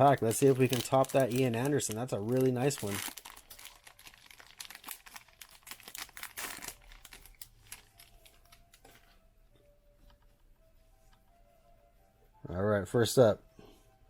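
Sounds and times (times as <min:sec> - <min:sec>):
foil wrapper tearing and crinkling: 0:00.0 - 0:08.6.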